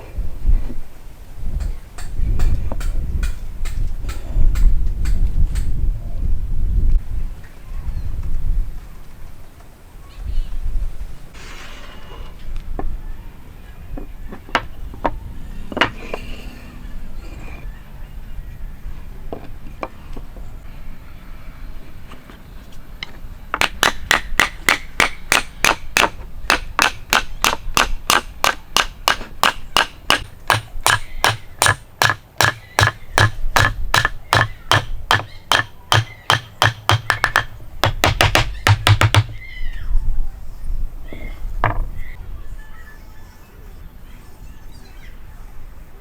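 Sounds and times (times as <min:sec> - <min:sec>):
hammer striking metal: 0:23.6 - 0:39.3.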